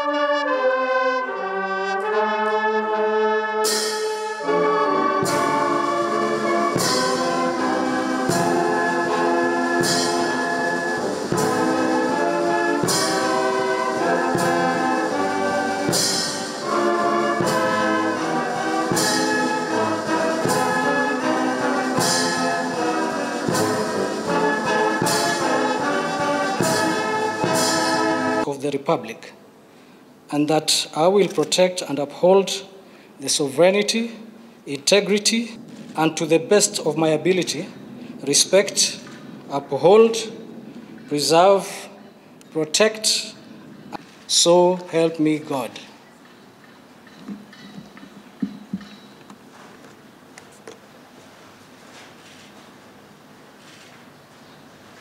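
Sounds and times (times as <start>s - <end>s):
brass chords: 0.0s - 28.5s
percussion strokes: 3.5s - 28.5s.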